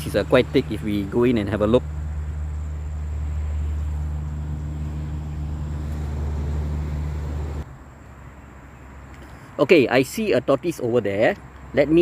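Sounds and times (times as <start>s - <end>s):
low mechanical hum: 0.0s - 8.8s.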